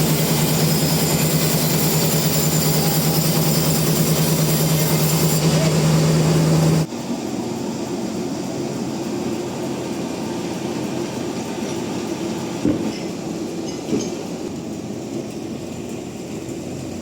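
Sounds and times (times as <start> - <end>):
loud machine tone: 0.0 - 11.2
sawmill machinery running: 0.0 - 17.0.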